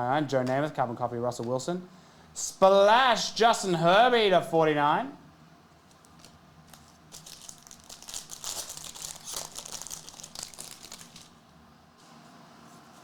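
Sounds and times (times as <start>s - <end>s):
wrapper crinkling and tearing: 5.9s - 11.4s.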